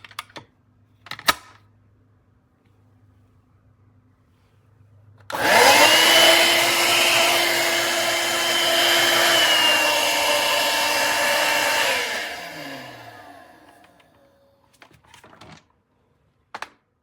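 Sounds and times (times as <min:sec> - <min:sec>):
vacuum motor whine: 0:05.3 - 0:14.4.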